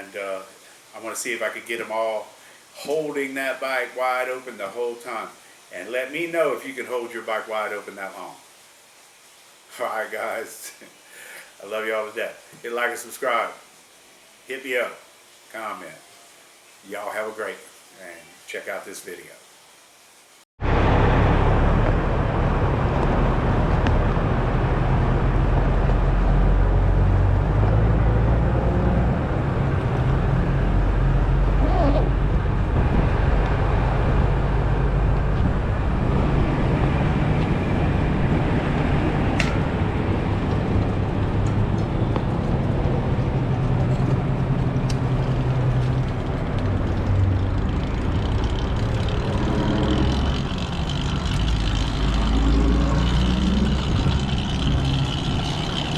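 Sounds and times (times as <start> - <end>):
rushing noise: 20.6 - 55.9
two-stroke engine droning: 20.6 - 55.9.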